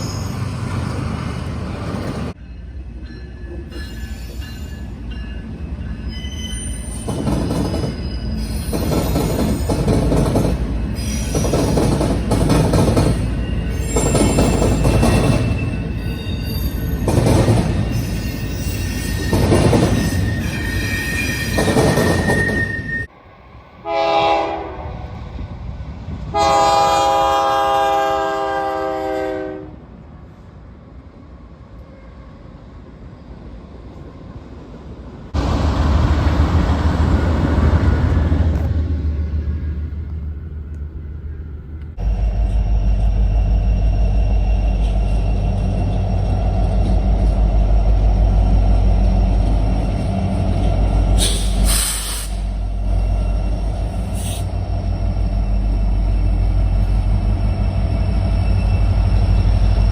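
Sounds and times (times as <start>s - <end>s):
diesel locomotive engines rumbling: 0.0s - 59.9s
train passing with rail noise: 0.0s - 59.9s
locomotive air horn blasts: 23.8s - 25.0s, 26.3s - 29.8s.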